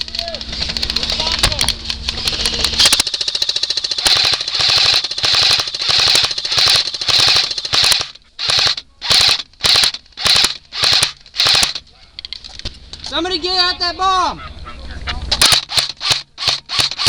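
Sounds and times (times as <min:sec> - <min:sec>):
airsoft rifle firing: 0:01.4 - 0:11.9, 0:15.4 - 0:17.0.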